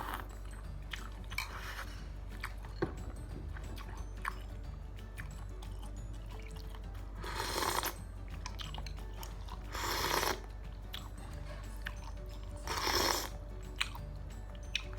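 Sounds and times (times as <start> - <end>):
loud slurps: 0.0 - 0.4, 1.0 - 2.6, 6.4 - 11.1, 12.6 - 14.0
background music: 0.0 - 14.9
chewing clicks: 5.2 - 14.9.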